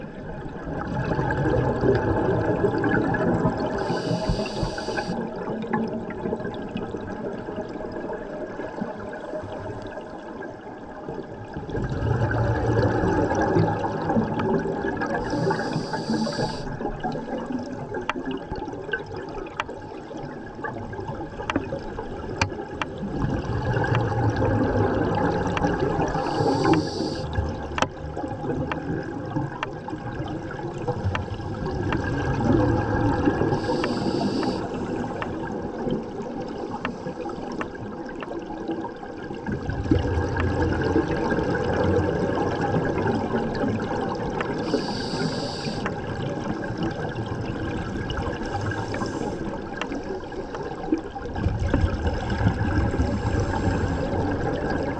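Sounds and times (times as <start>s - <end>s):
bubbles rumbling: 0.0s - 9.3s, 11.2s - 19.3s, 20.2s - 36.8s, 37.8s - 54.9s
diver breathing through regulator: 3.7s - 5.2s, 15.2s - 16.8s, 26.0s - 27.4s, 33.4s - 35.4s, 44.5s - 46.0s, 48.4s - 49.7s, 53.0s - 54.5s.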